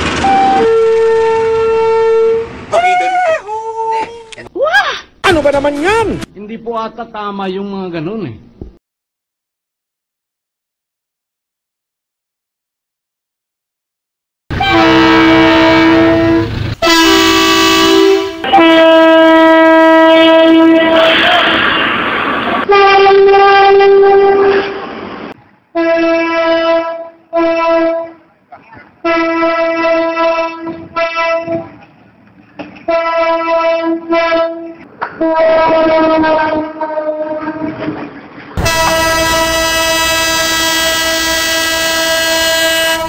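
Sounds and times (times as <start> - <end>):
train noise: 0.0 - 4.4, 14.5 - 43.0
locomotive air horn chord: 0.2 - 2.6, 14.5 - 21.9, 22.6 - 24.9, 25.8 - 28.2, 29.0 - 31.6, 32.9 - 37.8, 38.6 - 43.0.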